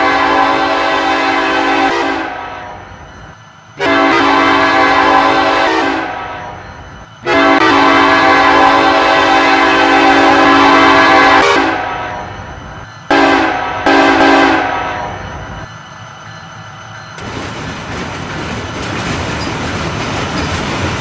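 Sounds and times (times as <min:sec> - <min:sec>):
locomotive air horn blasts: 0:00.0 - 0:02.8, 0:03.8 - 0:06.6, 0:07.2 - 0:12.3, 0:13.1 - 0:15.2.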